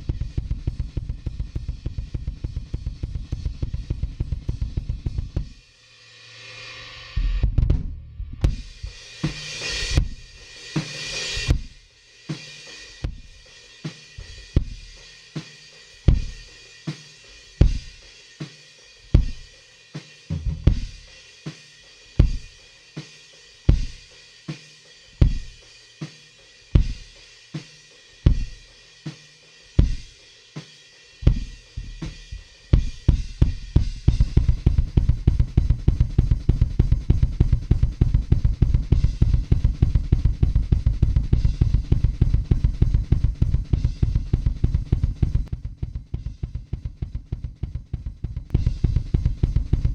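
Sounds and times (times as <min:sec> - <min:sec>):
fast double-kick drumming: 0:00.0 - 0:05.5, 0:07.4 - 0:09.0, 0:31.2 - 0:49.9
drum kit beat: 0:00.0 - 0:06.4, 0:07.0 - 0:49.9
cymbals: 0:05.4 - 0:07.5, 0:08.4 - 0:45.6.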